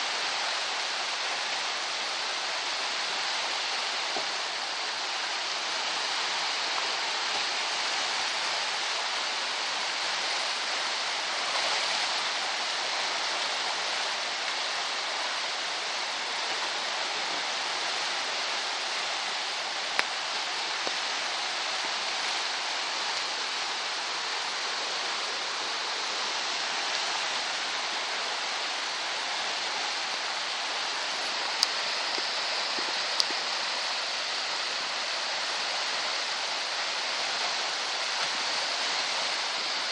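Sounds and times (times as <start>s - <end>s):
flowing water rushing: 0.0s - 39.9s.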